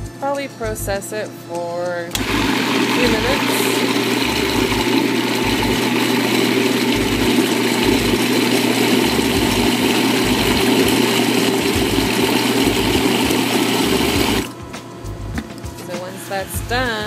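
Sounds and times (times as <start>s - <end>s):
food processor motor running: 2.1s - 14.6s.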